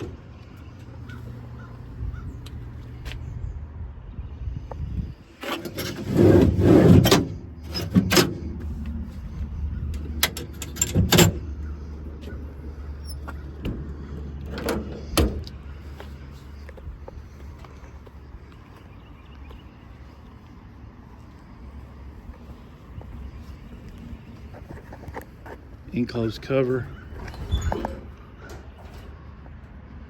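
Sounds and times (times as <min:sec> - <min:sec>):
truck doors and latches rattling: 0:00.0 - 0:02.6, 0:05.3 - 0:15.9, 0:27.0 - 0:29.4.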